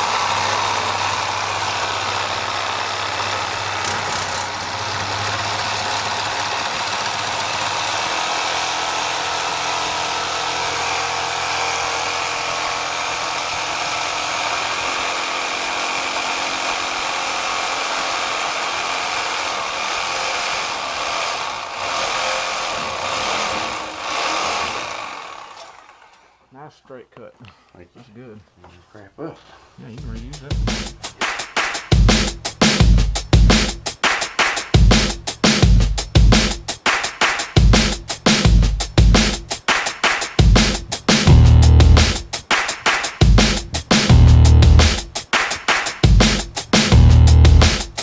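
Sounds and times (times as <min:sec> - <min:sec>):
reciprocating saw cutting pipe: 0:00.0 - 0:26.5, 0:39.7 - 0:48.0.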